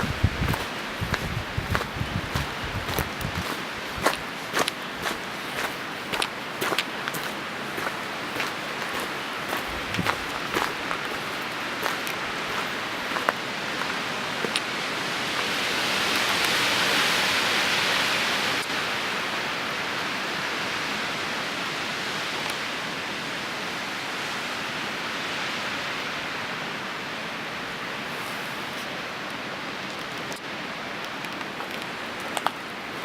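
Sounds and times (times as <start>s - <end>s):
water rushing: 0.0s - 21.4s.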